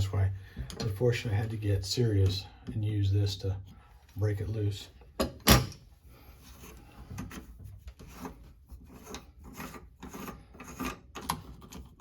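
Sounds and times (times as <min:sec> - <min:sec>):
metal threads scraping: 0:05.8 - 0:12.0.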